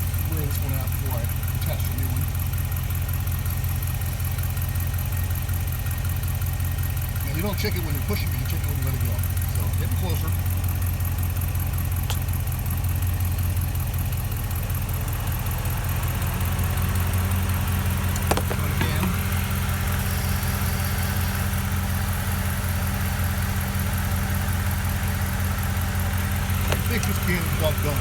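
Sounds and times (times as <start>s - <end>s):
pickup engine idling: 0.0s - 28.0s
sharp clicks: 12.0s - 12.5s.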